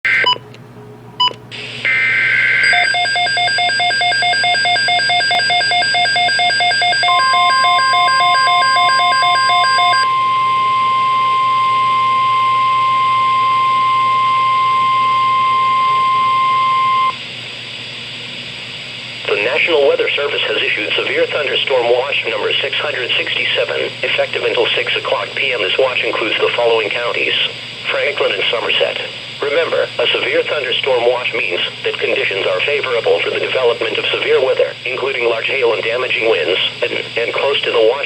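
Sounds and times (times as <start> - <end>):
steady warning alarm tone: 1.2 - 17.3
rapid pulsing beeps: 1.9 - 17.2.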